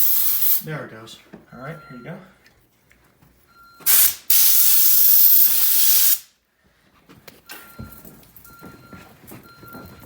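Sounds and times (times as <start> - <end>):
aerosol spray hissing: 0.0 - 0.6, 3.9 - 6.3
faint beeping: 1.5 - 2.5.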